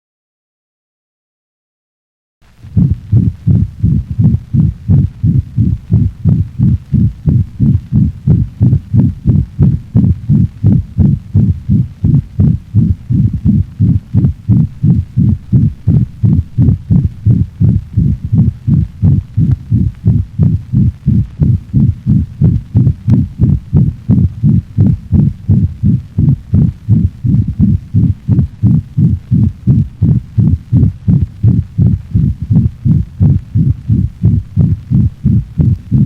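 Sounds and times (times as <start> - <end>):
dog heartbeat through stethoscope: 2.7 - 36.0
heart murmur: 2.7 - 36.0.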